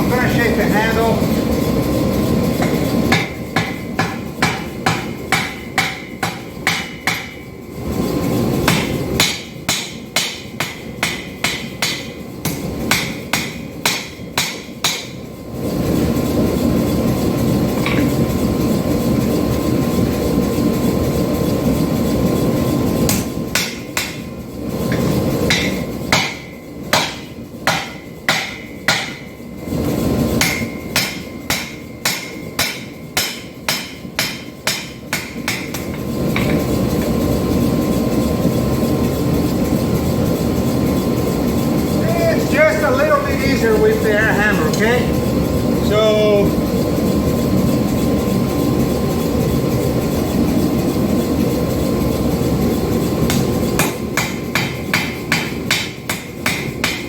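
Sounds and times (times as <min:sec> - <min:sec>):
hammer ringing on anvil: 0:02.6 - 0:07.4, 0:08.7 - 0:15.2, 0:23.1 - 0:24.2, 0:24.9 - 0:29.4, 0:30.4 - 0:36.6, 0:53.3 - 0:57.0.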